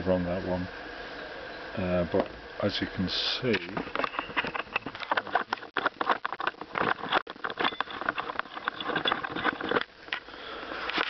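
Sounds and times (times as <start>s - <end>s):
steady hiss: 0.0s - 6.8s, 9.4s - 11.0s.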